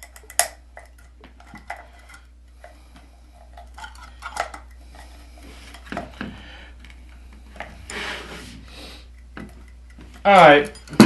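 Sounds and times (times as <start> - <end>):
plastic parts clicking and clinking: 3.6 - 4.8.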